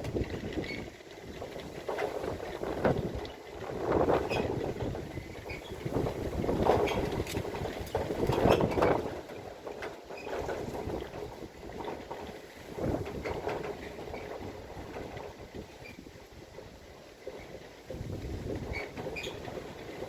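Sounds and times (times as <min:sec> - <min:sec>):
light clicks and rattles: 0:00.0 - 0:20.0
wind buffeting microphone: 0:00.0 - 0:20.0.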